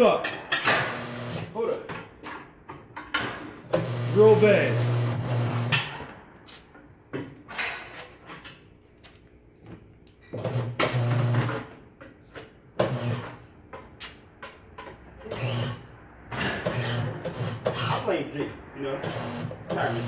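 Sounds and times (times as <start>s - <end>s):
tire changer machine humming: 0.6s - 1.6s, 3.6s - 6.2s, 10.3s - 11.8s, 12.8s - 13.5s, 15.2s - 20.0s.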